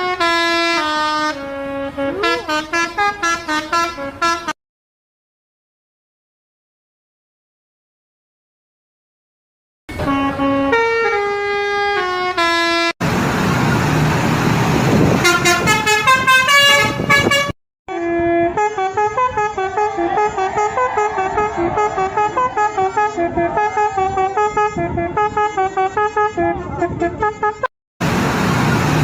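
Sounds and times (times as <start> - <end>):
bus horns playing tunes: 0.0 - 4.6, 9.9 - 13.0, 15.0 - 27.7
rush of noise: 28.0 - 29.0.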